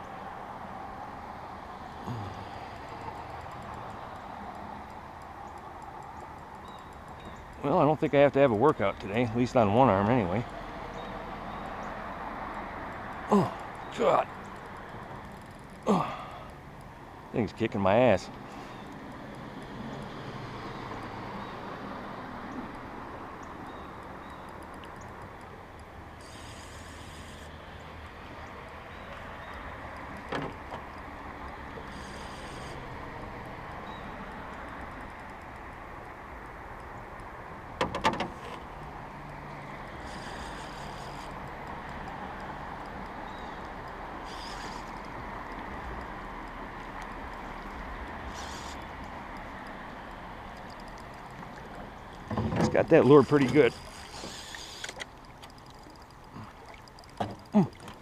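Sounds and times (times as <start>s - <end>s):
electric fishing reel whirring: 26.2s - 27.7s, 31.8s - 33.1s, 39.7s - 46.6s, 47.2s - 51.4s, 53.2s - 57.5s.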